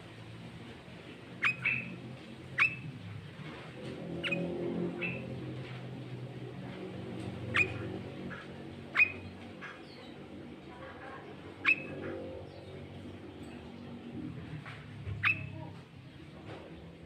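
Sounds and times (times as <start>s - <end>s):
songbird calling: 1.4s - 3.0s, 4.2s - 5.3s, 7.5s - 10.3s, 11.6s - 12.9s, 15.2s - 15.7s.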